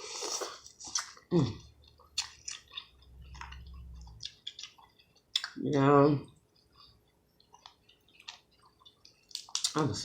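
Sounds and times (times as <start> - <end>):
chewing corn on the cob: 0.0 - 5.6.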